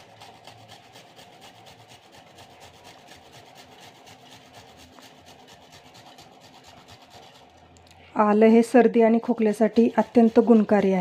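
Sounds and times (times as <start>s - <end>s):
ginger grating on hand grater: 0.0s - 7.7s, 9.0s - 11.0s.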